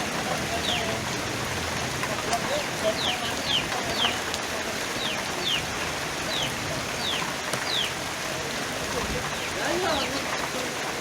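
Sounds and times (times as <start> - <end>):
steady rain falling: 0.0 - 11.0.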